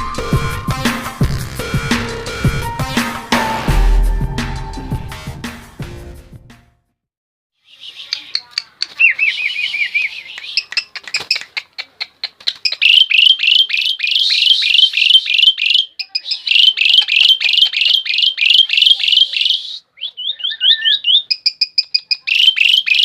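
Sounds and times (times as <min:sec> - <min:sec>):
starling singing: 0:07.6 - 0:11.5, 0:12.6 - 0:23.0.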